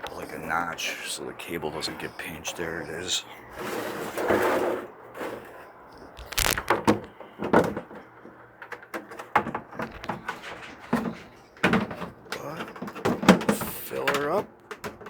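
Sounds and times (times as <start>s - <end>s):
plastic parts knocking and clunking: 8.7s - 15.0s.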